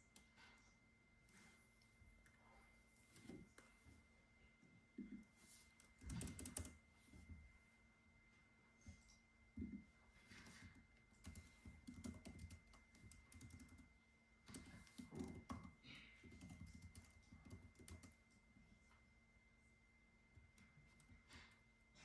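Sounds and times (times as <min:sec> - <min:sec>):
typing on computer keyboard: 0:05.8 - 0:06.8, 0:10.4 - 0:13.9, 0:14.5 - 0:18.3.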